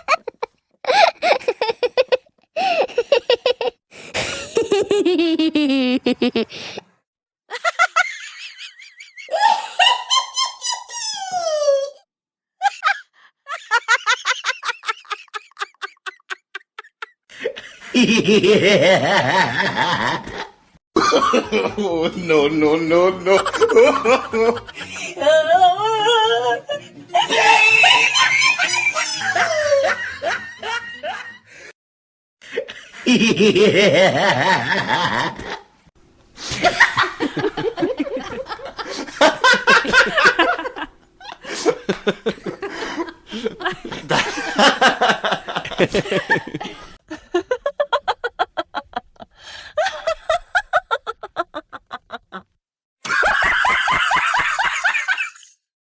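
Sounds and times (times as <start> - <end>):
laughter: 0.0 - 6.5, 7.5 - 12.0, 12.6 - 31.6, 32.4 - 35.7, 36.5 - 55.6
burst of wavering laughter: 9.1 - 12.0, 23.4 - 31.6
rapid short laughs: 24.7 - 25.4, 27.1 - 29.6.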